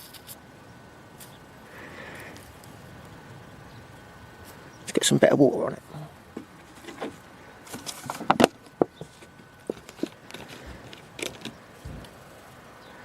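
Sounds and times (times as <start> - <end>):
handling clicks and taps: 6.4 - 12.2.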